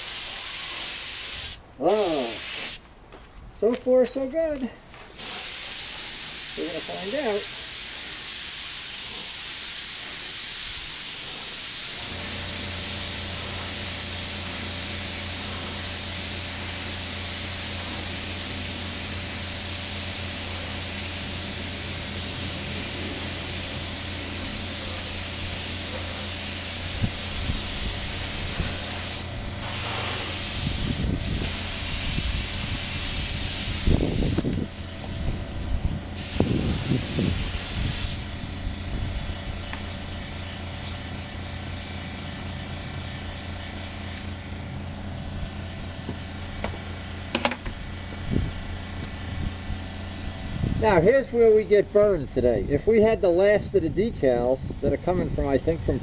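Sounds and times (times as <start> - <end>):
paint spray gun hissing: 0.0 - 2.8, 5.2 - 35.3, 36.1 - 38.5
low motor hum: 12.0 - 50.8.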